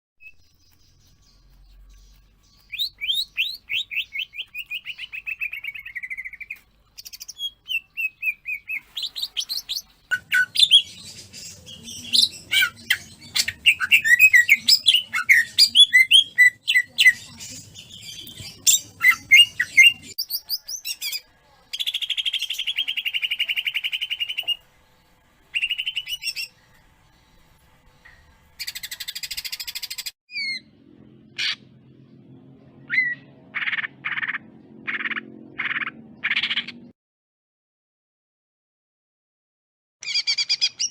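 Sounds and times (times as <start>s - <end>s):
bird singing whistled notes: 0.2s - 17.2s, 25.5s - 26.5s
buzzy rattling bird trills: 8.8s - 11.5s.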